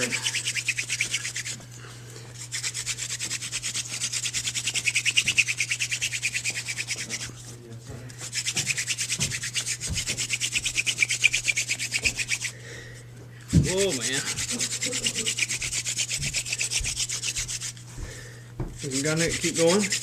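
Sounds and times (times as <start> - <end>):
hand drill scratchy rubbing on wood: 0.0 - 12.6, 13.4 - 20.0.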